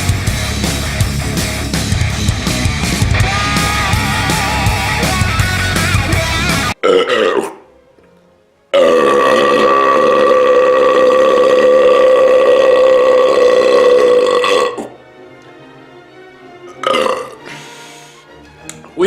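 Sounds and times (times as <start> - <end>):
man burping: 6.8 - 7.7, 8.8 - 15.0, 16.7 - 17.5.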